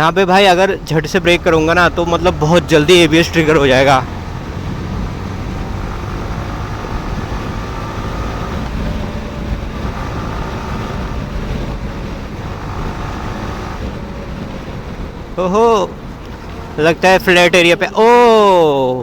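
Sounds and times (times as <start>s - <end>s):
motorcycle engine cruising: 0.0s - 19.0s
wind noise on microphone: 4.1s - 16.8s.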